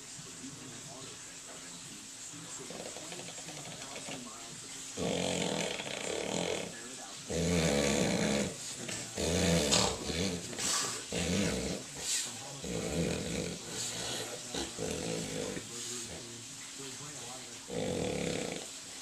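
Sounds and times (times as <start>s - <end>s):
man snoring loudly: 5.0s - 8.6s, 9.2s - 11.9s, 12.6s - 15.6s, 17.7s - 18.7s.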